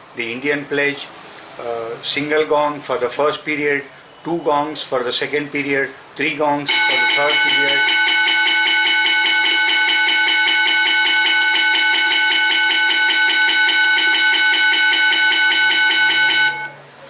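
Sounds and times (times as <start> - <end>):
electric school bell ringing: 6.7 - 16.8.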